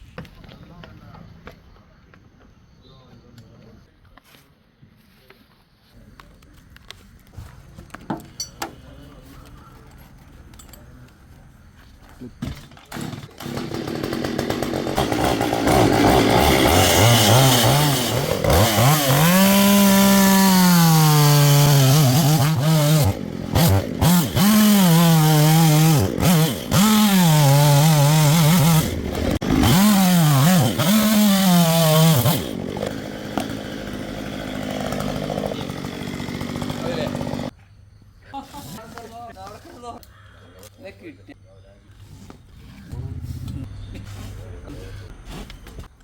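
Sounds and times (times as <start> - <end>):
chainsaw revving: 12.9 - 37.5.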